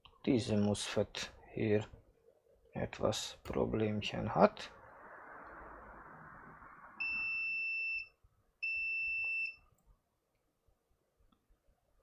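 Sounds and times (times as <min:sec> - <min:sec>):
multimeter continuity beeps: 0:07.0 - 0:09.6.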